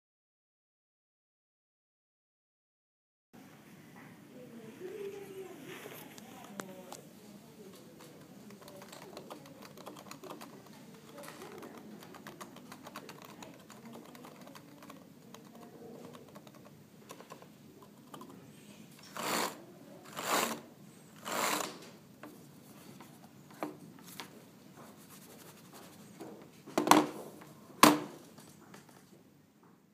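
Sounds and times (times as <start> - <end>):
keyboard typing: 7.8 - 18.4.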